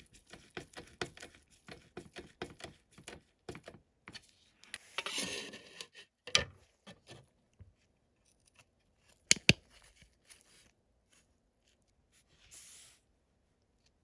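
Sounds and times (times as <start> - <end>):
sharp clicks: 9.3 - 9.6.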